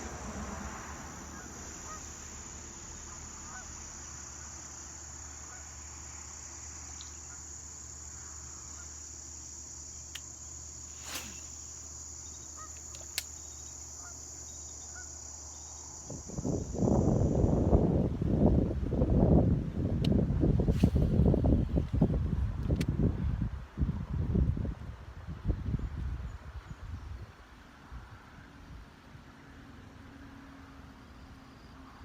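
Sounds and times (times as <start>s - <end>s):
chorus of insects: 0.0s - 18.6s, 30.2s - 32.0s
sharp clicks: 12.7s - 13.5s.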